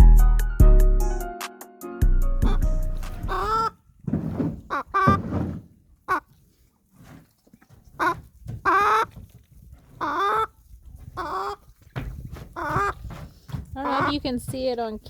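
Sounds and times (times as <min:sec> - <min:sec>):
chickens clucking: 0:02.4 - 0:06.5, 0:07.5 - 0:15.0
drawn-out chicken calls: 0:02.5 - 0:06.5, 0:07.5 - 0:14.3.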